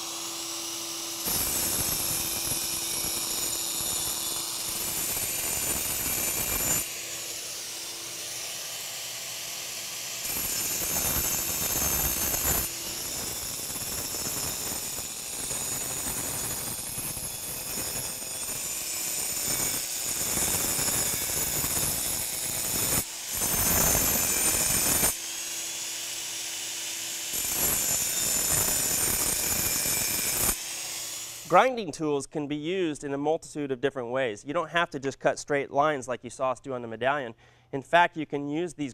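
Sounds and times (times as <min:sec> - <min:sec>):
vacuum humming: 0:00.0 - 0:04.8
angle grinder cutting concrete: 0:00.0 - 0:31.8.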